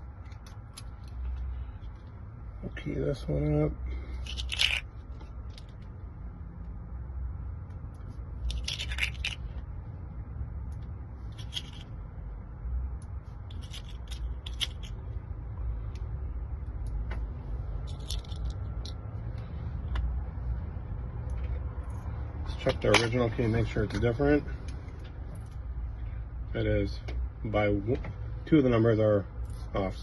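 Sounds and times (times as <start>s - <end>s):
lock pins clicking and scraping: 4.2s - 4.9s, 8.4s - 9.4s, 11.3s - 11.9s, 13.5s - 14.9s, 17.8s - 19.0s.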